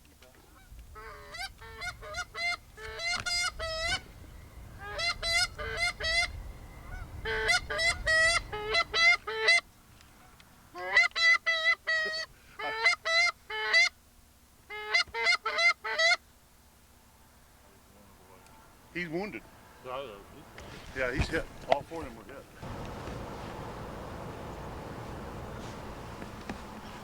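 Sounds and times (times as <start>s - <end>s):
geese honking: 0.4s - 9.7s, 10.8s - 14.0s, 14.7s - 16.3s, 17.7s - 27.0s.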